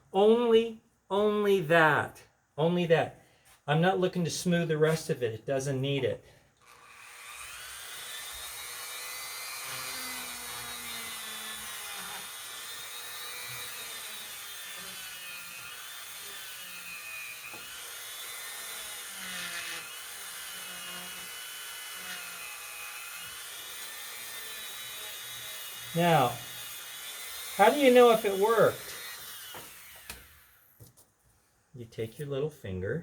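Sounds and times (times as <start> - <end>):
rotary tool whining on metal: 6.6 - 30.8.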